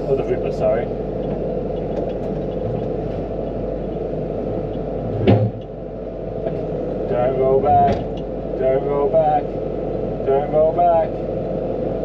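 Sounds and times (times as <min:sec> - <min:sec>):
excavator diesel engine running: 0:00.0 - 0:12.0
loud metal clunk: 0:05.1 - 0:05.7.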